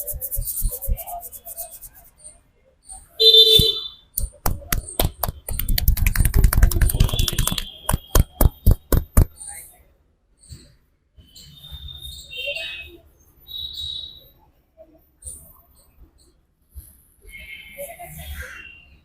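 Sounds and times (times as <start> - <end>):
hands slapping in massage: 4.2 - 9.3.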